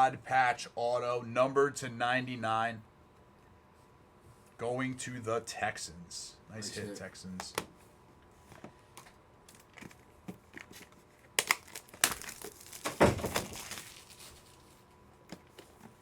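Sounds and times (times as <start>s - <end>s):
plastic packaging crinkling and tearing: 9.5s - 14.8s.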